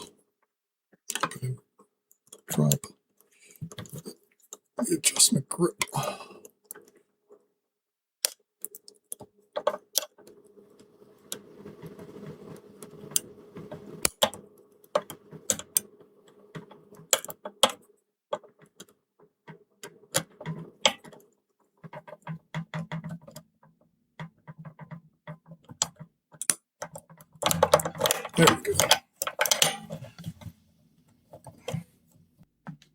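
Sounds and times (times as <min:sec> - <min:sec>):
lock picks clicking and scraping: 0:24.2 - 0:30.4.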